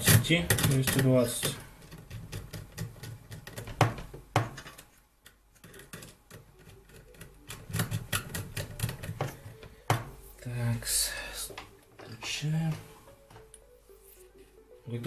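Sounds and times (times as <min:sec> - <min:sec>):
sharp knocks: 0:03.6 - 0:04.7.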